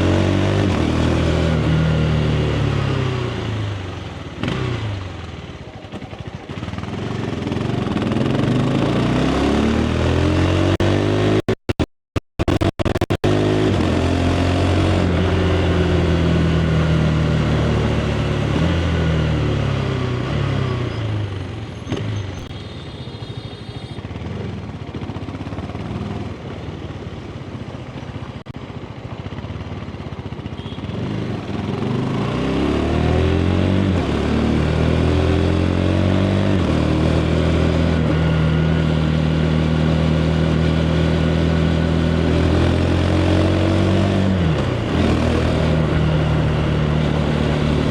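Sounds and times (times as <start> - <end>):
motorcycle engine: 0.0 - 47.9.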